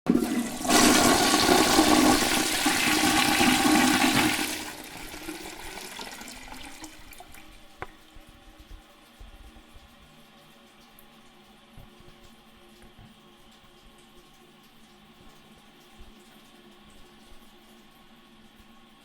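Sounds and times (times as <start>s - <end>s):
toilet flushing: 0.1s - 7.7s.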